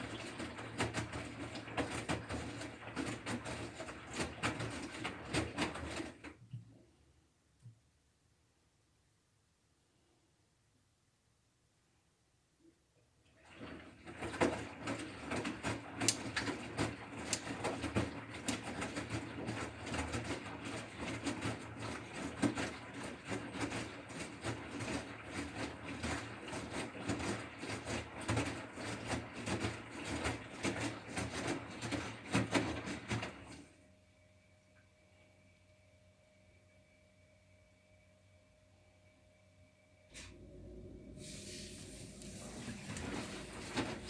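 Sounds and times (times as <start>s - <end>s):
laundry tumbling in washing machine: 0.0s - 6.8s, 13.2s - 33.9s, 40.1s - 44.0s
faint steady hum: 33.7s - 44.0s.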